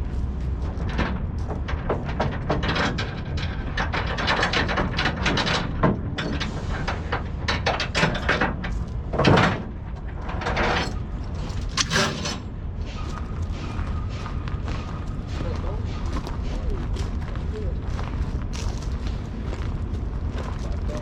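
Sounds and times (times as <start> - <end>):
steady low rumble: 0.0 - 21.0
chain clinking and clanking: 0.4 - 12.6.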